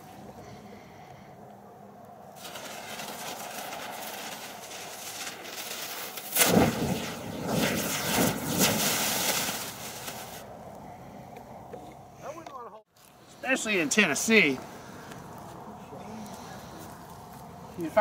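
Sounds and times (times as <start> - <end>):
firework burst with sharp pops: 2.4 - 10.5
firework hissing: 2.4 - 10.5
firework sputtering: 2.4 - 10.5.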